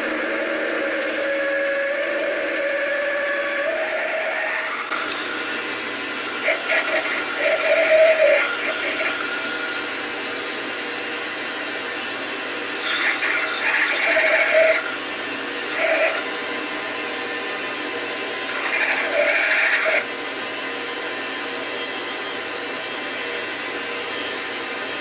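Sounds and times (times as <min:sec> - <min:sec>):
metal lathe running: 0:00.0 - 0:25.0
rough scraping of metal bar: 0:06.4 - 0:09.6, 0:12.8 - 0:14.9, 0:18.5 - 0:20.0.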